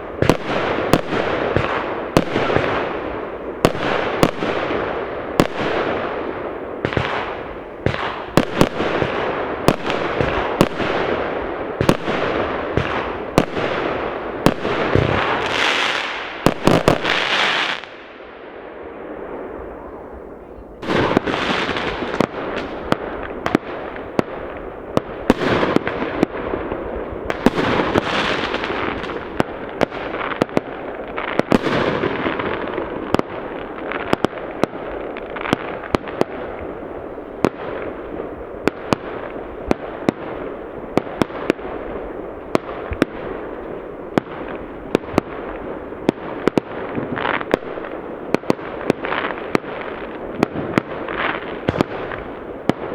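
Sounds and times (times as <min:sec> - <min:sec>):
sharp firework bangs: 0:00.0 - 0:18.0, 0:20.8 - 0:30.7, 0:31.4 - 0:34.8, 0:44.2 - 0:52.9
fireworks crackling and rumbling: 0:00.0 - 0:52.9.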